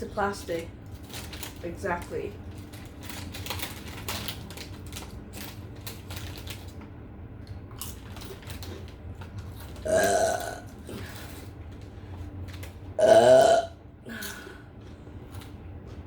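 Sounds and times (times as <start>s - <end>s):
person burping: 9.8s - 10.7s, 13.0s - 14.4s.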